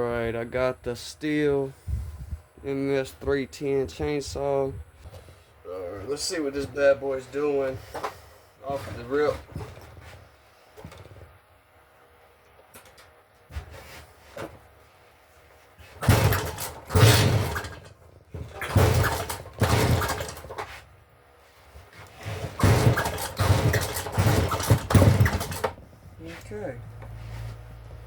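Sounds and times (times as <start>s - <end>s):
chainsaw starter rope pulls: 15.8s - 20.8s, 22.0s - 25.8s
chainsaw engine cranking: 16.0s - 20.7s, 22.2s - 25.8s.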